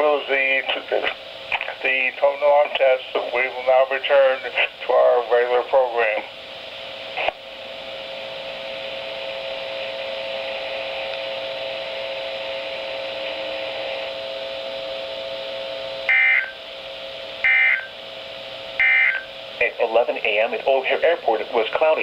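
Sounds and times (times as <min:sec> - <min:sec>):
radio static hiss: 0:00.0 - 0:07.4, 0:12.3 - 0:14.2, 0:18.8 - 0:22.0
faint hum: 0:00.0 - 0:22.0
loud data tone bursts: 0:16.1 - 0:16.6, 0:17.4 - 0:18.0, 0:18.8 - 0:19.4.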